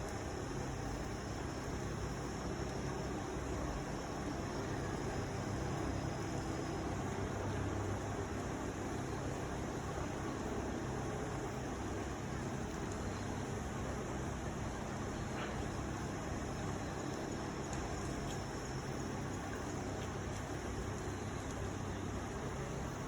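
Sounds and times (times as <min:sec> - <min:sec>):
constant hiss: 0:00.0 - 0:23.0
faint clicks: 0:12.7 - 0:13.3, 0:16.6 - 0:21.9.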